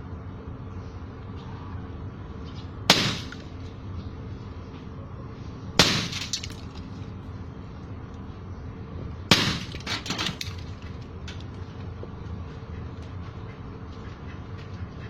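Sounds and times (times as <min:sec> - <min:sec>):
air gun shots: 0:02.9 - 0:03.6, 0:05.8 - 0:06.6, 0:09.3 - 0:10.4
glass breaking: 0:05.8 - 0:06.8, 0:09.3 - 0:10.8.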